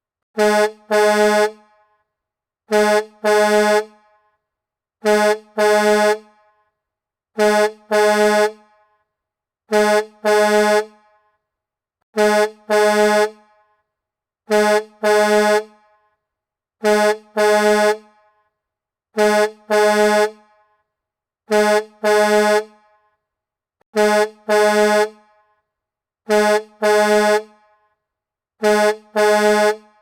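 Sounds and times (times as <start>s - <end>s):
truck air horn blasts: 0.4s - 2.0s, 2.7s - 4.4s, 5.0s - 6.7s, 7.4s - 9.1s, 9.7s - 11.4s, 12.1s - 13.8s, 14.5s - 16.2s, 16.8s - 18.5s, 19.1s - 20.8s, 21.5s - 23.1s, 23.9s - 25.6s, 26.3s - 28.0s, 28.6s - 30.0s.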